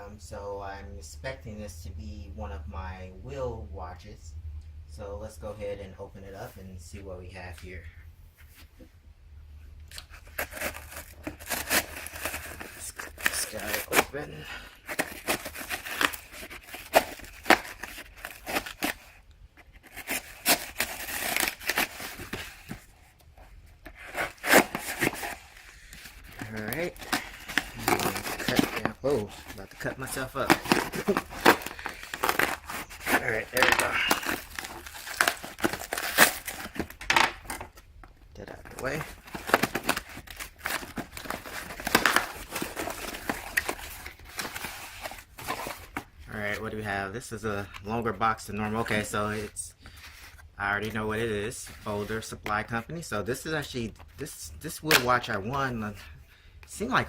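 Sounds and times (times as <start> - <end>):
packing tape tearing: 9.9 - 22.9, 23.8 - 37.8, 38.7 - 46.1
cardboard clicks and scrapes: 10.0 - 14.0, 23.8 - 37.7.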